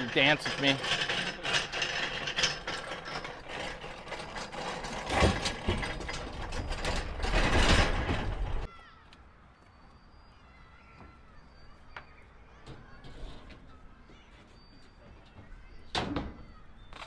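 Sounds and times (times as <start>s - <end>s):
metal parts clattering: 0.0s - 8.7s.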